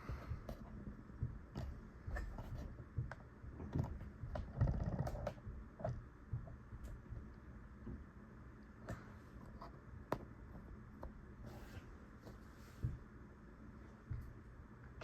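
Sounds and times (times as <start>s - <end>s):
ceiling fan humming: 0.0s - 15.0s.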